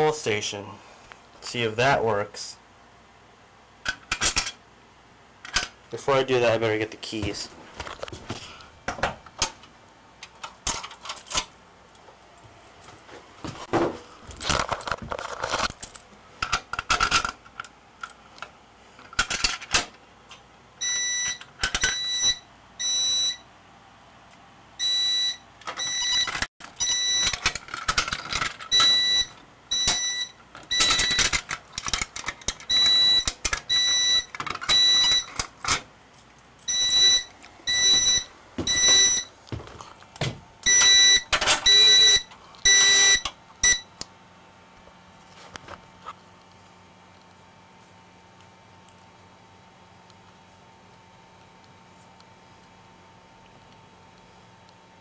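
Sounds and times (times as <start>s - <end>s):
pulsing fire alarm tone: 20.8s - 23.4s, 24.8s - 27.4s, 28.7s - 31.3s, 32.7s - 35.3s, 36.7s - 39.3s, 40.6s - 43.9s.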